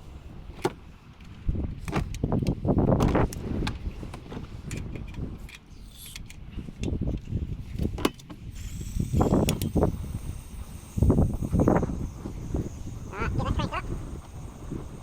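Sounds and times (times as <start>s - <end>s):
camping gear clicks and knocks: 0.6s - 8.4s.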